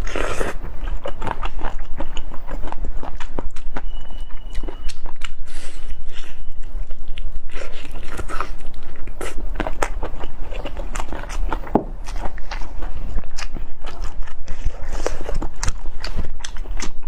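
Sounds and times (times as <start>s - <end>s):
biting and chewing food: 0.0s - 17.0s
crackly mouth clicks and crunches: 0.0s - 17.0s.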